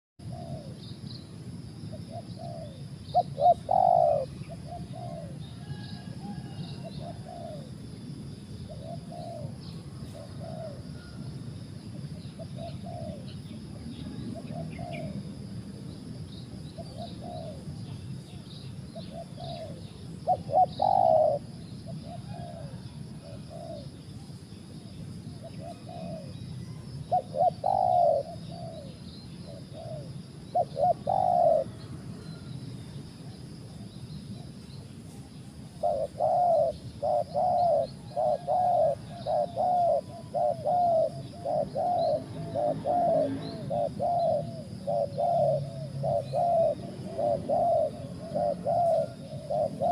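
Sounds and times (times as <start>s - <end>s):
doves cooing: 0.2s - 0.8s, 1.9s - 15.5s, 16.5s - 18.0s, 19.0s - 24.0s, 25.4s - 32.5s, 35.6s - 49.9s
small birds chirping: 23.2s - 32.6s, 33.9s - 49.9s.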